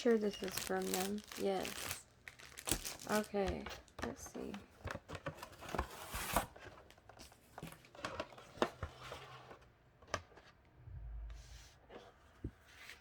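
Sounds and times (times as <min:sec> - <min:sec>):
packaging rustling: 0:00.0 - 0:08.6.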